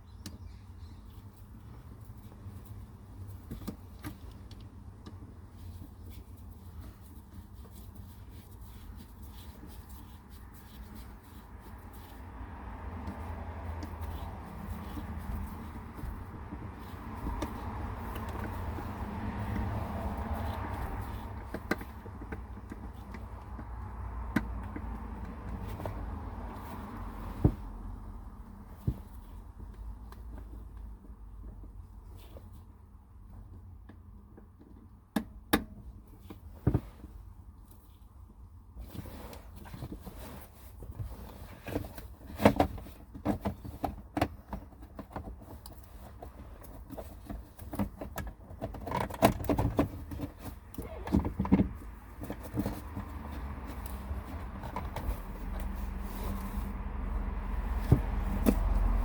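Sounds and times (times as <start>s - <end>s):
gear shifter clicks and knocks: 13.0s - 27.7s, 40.9s - 59.0s.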